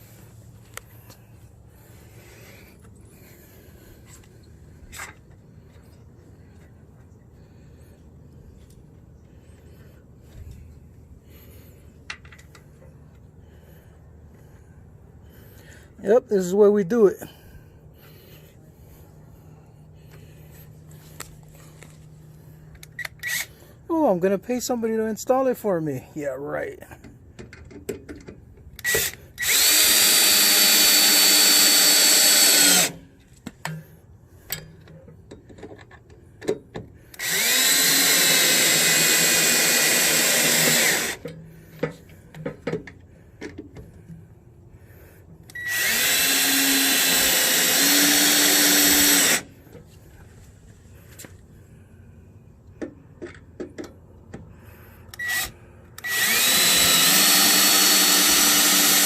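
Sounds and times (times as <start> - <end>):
small clicks and knocks: 27.0 - 29.2, 52.7 - 54.5
power drill running: 28.8 - 33.0, 37.1 - 41.3, 45.5 - 49.6, 55.1 - 59.0.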